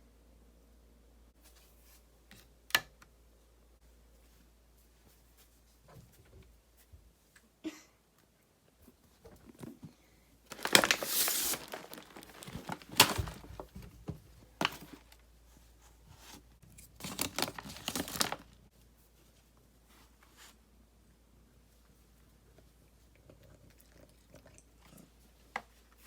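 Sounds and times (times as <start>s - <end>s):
packaging tearing and crinkling: 10.5s - 13.7s, 17.0s - 18.6s.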